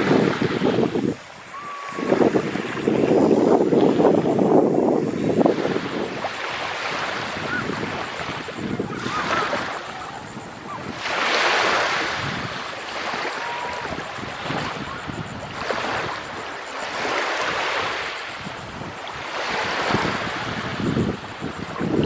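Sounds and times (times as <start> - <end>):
small waves washing ashore: 0.0 - 22.0
wind on microphone: 0.0 - 22.0.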